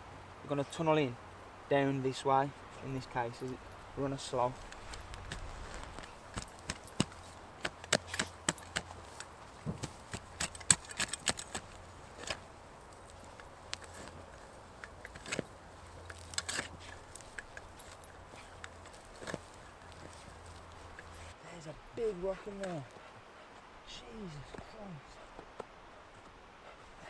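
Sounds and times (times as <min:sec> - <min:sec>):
shovel scraping stony soil: 0:04.6 - 0:20.3.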